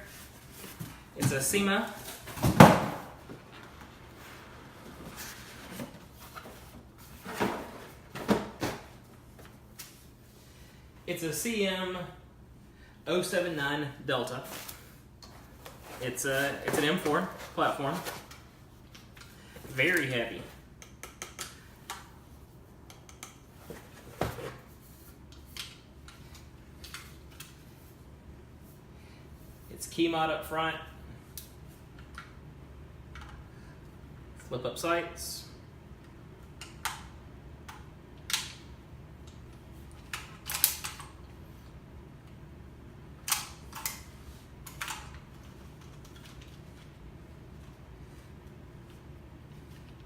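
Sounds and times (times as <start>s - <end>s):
handling noises of rifle and packaging: 14.4s - 20.2s, 43.4s - 47.0s.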